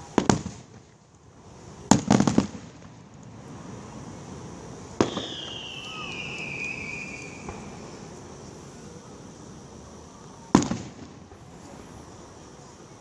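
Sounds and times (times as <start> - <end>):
firework bursting with a bang: 0.0 - 0.9, 1.8 - 3.1, 4.9 - 8.8, 10.5 - 12.0
firework whistle falling: 5.0 - 8.9.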